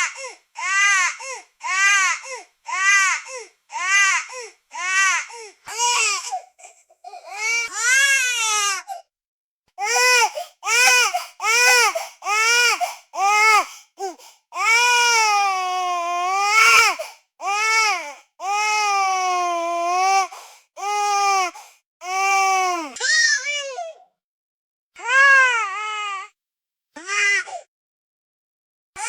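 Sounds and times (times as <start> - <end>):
newborn baby crying: 0.0 - 9.0, 9.8 - 23.0.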